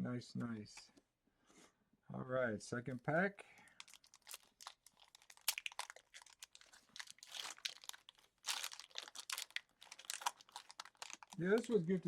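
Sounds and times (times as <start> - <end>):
foil wrapper crinkling and tearing: 3.7 - 12.0.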